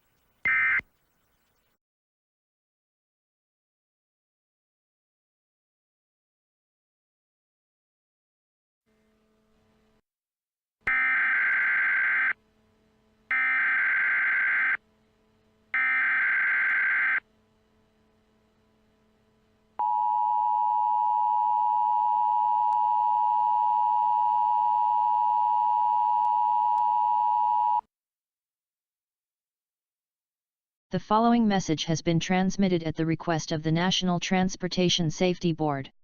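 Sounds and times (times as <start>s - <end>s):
two-tone attention signal: 0.5s - 0.8s.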